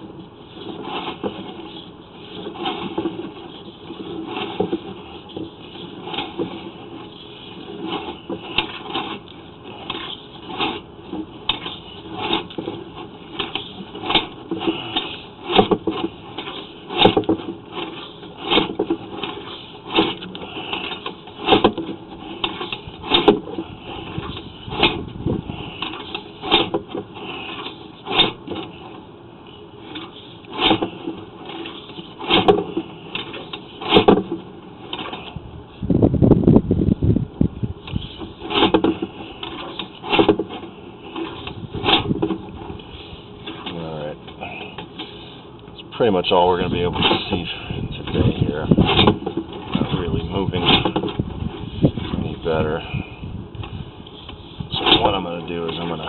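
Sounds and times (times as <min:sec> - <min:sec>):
camera rod knocking and scraping in pipe: 0:00.6 - 0:28.8, 0:29.9 - 0:35.4, 0:37.8 - 0:42.8, 0:46.6 - 0:52.3.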